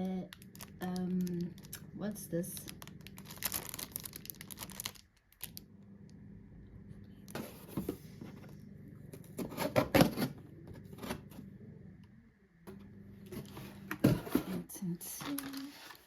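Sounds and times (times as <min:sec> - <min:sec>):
packaging crinkling and rustling: 0:00.0 - 0:05.6, 0:13.3 - 0:16.0.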